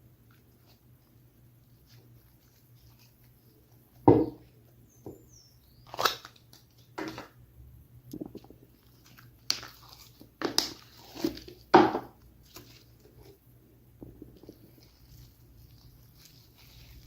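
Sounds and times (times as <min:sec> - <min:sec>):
slime squishing and crackling: 0:08.2 - 0:11.7, 0:14.3 - 0:17.0.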